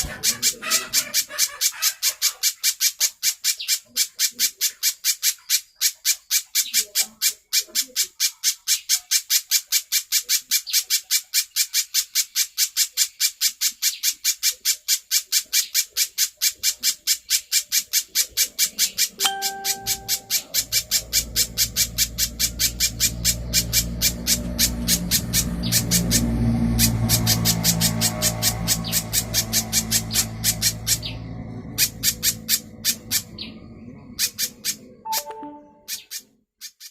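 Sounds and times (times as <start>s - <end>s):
bird chip notes: 19.2s - 22.7s, 35.0s - 36.2s.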